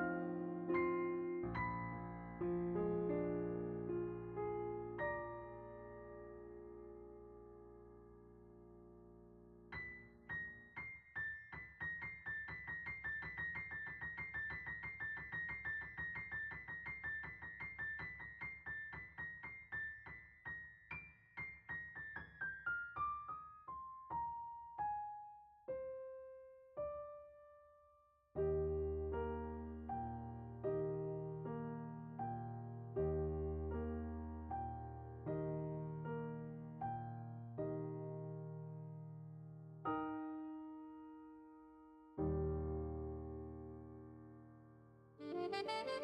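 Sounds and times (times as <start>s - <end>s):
piano music: 0.0s - 19.9s, 45.2s - 46.0s.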